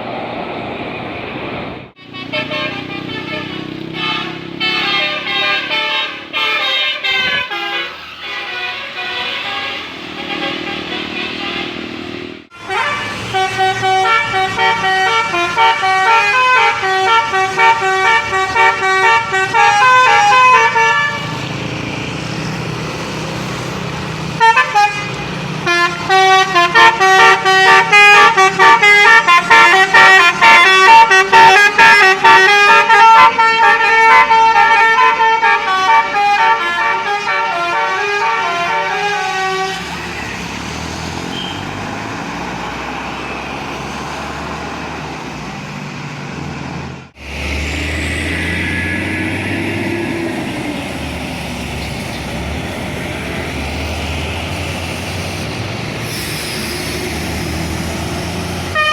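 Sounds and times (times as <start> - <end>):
musical bus horn melody: 2.0 - 21.5, 24.4 - 40.1, 58.6 - 58.9.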